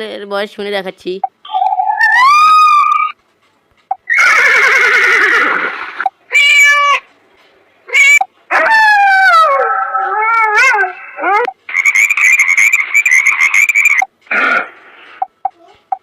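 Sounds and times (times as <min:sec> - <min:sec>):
recorded animal calls: 0:01.4 - 0:03.2, 0:07.9 - 0:16.0.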